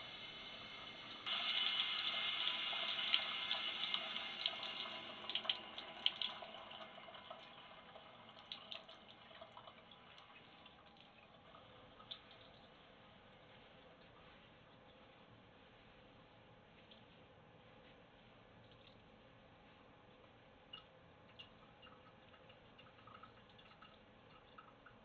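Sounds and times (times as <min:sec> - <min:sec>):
water running: 0:00.0 - 0:16.0, 0:20.7 - 0:25.0
water drips and splashes: 0:01.2 - 0:14.1, 0:20.7 - 0:25.0.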